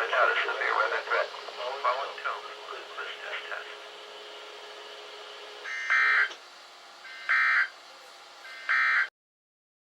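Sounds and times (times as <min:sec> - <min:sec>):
steady radio hiss: 0:00.0 - 0:08.8
radio data bursts: 0:07.1 - 0:07.8.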